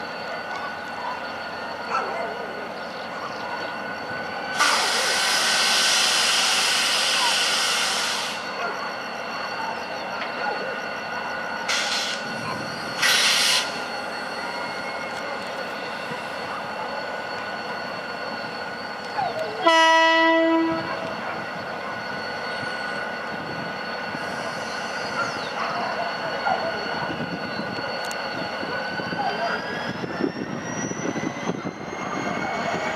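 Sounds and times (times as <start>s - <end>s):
diesel locomotive running: 0.0s - 32.9s
short air hisses: 11.7s - 12.2s, 13.0s - 13.8s
locomotive horn blast: 19.6s - 21.3s.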